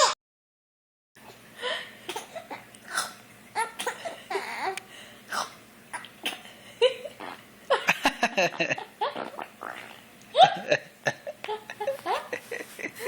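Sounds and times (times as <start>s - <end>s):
baby giggling and babbling: 11.4s - 12.4s.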